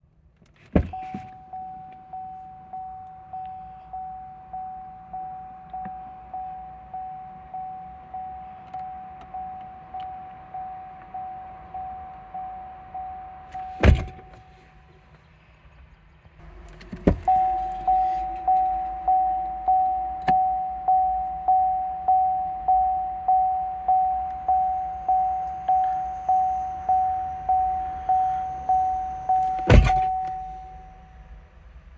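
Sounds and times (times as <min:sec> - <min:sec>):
car warning chime dinging: 0:00.8 - 0:14.5, 0:16.4 - 0:31.4
low hum: 0:10.2 - 0:31.9
loud thunk: 0:13.8 - 0:14.3, 0:16.8 - 0:17.4, 0:29.4 - 0:30.2.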